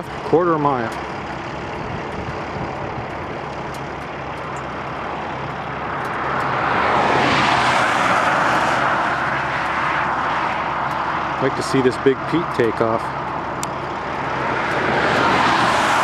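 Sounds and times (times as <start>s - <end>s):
diesel truck engine idling: 0.0s - 16.0s
broad rush of noise: 5.0s - 16.0s.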